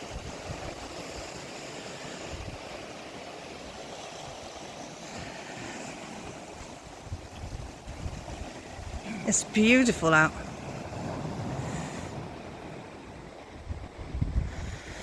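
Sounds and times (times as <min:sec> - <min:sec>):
sea and surf hiss: 0:00.0 - 0:15.0
wind buffeting microphone: 0:06.0 - 0:15.0.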